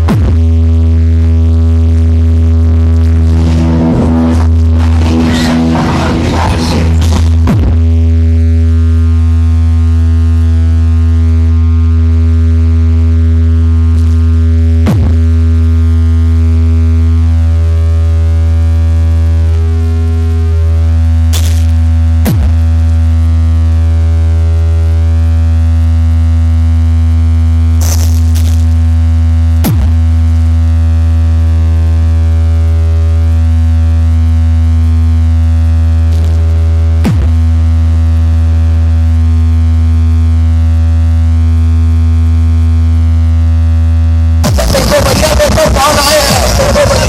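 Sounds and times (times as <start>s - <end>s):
deep bass tone: 0.0s - 47.0s
falling pitch drop sweep: 2.0s - 8.2s.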